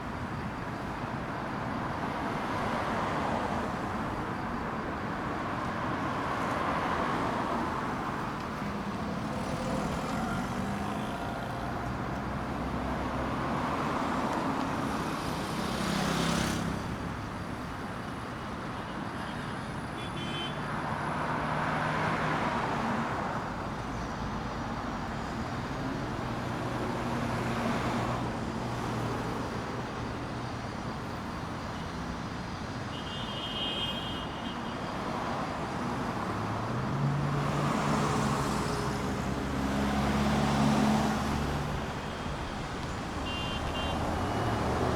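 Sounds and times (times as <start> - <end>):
cars passing: 0.0 - 44.9
tyre and engine noise: 34.8 - 44.9.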